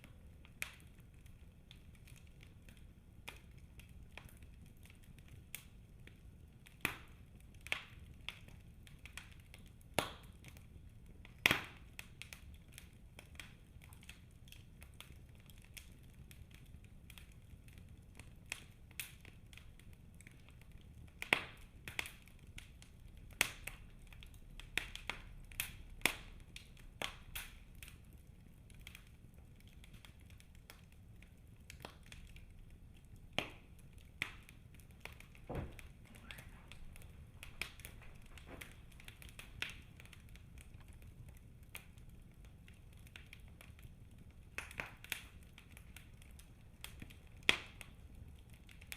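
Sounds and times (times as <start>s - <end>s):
wood fire crackling and popping: 0.0s - 48.9s
faint low rumble: 32.5s - 42.8s.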